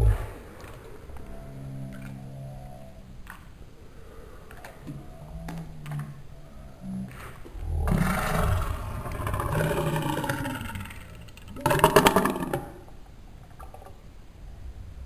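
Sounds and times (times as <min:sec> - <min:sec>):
slowed-down burp: 0:06.8 - 0:12.8.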